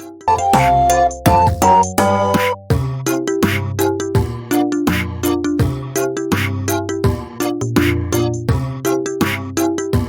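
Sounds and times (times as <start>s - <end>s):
drums: 0.0s - 10.0s
upbeat background music: 0.0s - 10.0s
keyboard notes: 0.3s - 3.0s.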